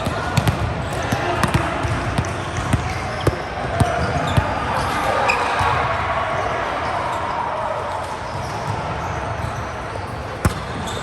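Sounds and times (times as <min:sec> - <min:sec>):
volleyball hit: 0:00.0 - 0:06.5, 0:10.1 - 0:11.0
players' voices and movement: 0:00.0 - 0:11.0.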